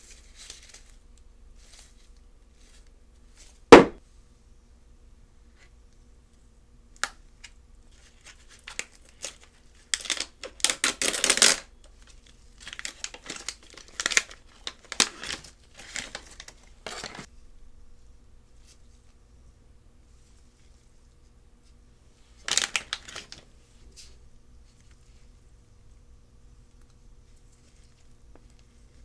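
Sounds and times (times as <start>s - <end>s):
packaging crinkling and tearing: 7.9s - 17.3s, 22.4s - 23.4s.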